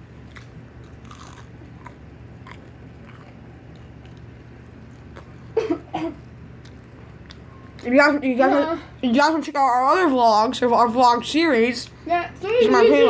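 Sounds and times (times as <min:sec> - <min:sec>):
steady low hum: 0:00.0 - 0:13.0
person chewing crunchy food: 0:00.2 - 0:05.5, 0:06.2 - 0:07.9.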